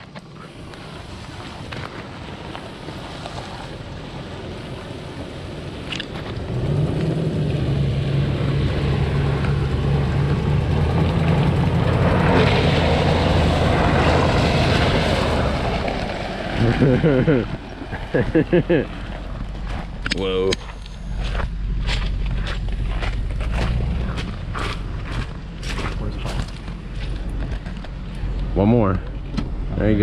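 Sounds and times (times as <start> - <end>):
water rushing and splashing: 0.0 - 20.3
suv engine driving: 0.0 - 30.0.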